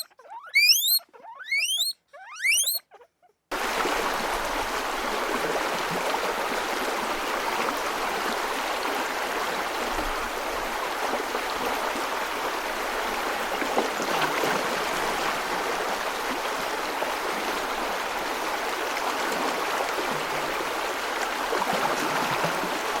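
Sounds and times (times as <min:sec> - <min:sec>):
stream water rushing: 0:03.5 - 0:23.0.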